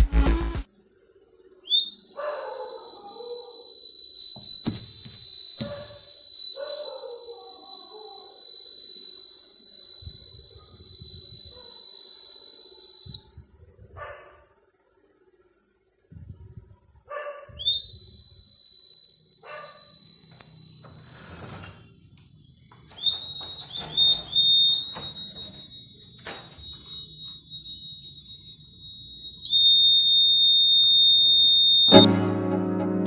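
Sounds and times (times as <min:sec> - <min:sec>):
high-pitched alarm buzzer beep: 0:01.7 - 0:13.4, 0:17.7 - 0:21.8, 0:23.0 - 0:32.1.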